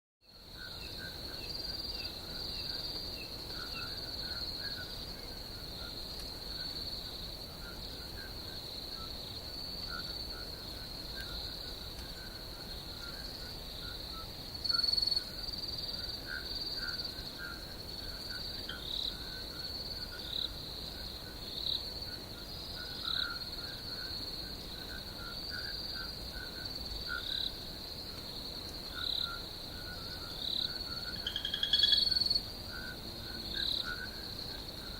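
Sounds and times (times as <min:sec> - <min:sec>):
crickets trilling: 0:00.3 - 0:34.9
lower rapid chirping calls: 0:31.2 - 0:32.4.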